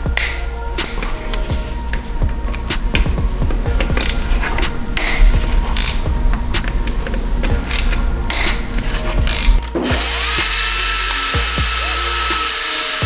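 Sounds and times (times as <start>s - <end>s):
ratchet clicking: 0.0s - 13.0s
cordless power tool spinning: 7.6s - 13.0s.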